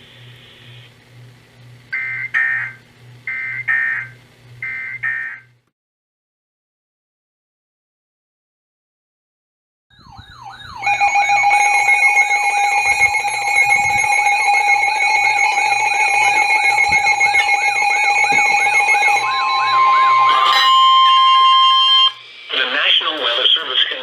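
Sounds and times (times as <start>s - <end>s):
sweeping siren-like wail: 9.9s - 22.2s
steady electronic tones: 10.0s - 22.8s.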